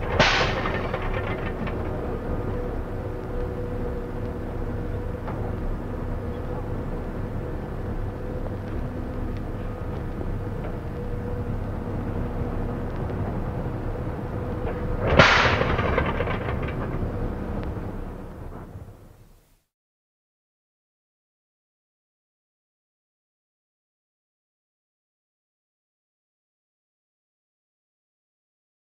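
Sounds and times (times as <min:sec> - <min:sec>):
loud engine misfire bang: 0:00.0 - 0:05.6, 0:14.6 - 0:18.8
aircraft engine drone: 0:00.0 - 0:19.5.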